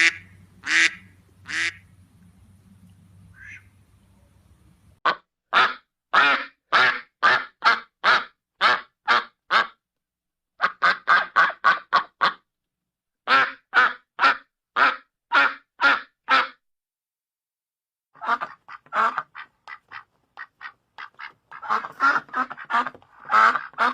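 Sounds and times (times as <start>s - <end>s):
duck quacking: 0.0s - 1.9s, 3.3s - 3.8s, 5.0s - 9.8s, 10.6s - 12.4s, 13.3s - 16.6s, 18.2s - 23.9s.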